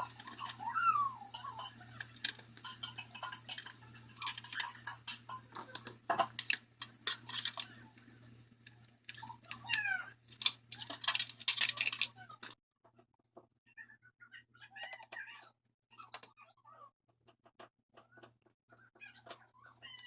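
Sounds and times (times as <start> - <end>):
small hard parts clicking: 0.0 - 12.6.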